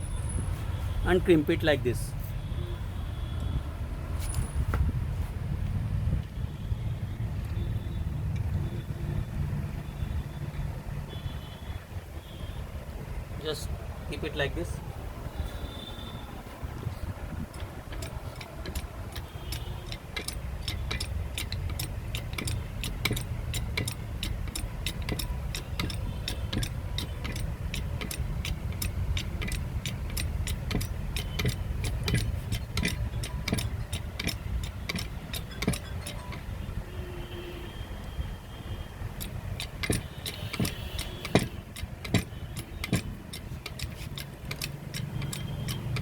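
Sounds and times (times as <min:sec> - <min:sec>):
crimping tool metallic clicks: 0:17.4 - 0:36.5, 0:39.2 - 0:46.0.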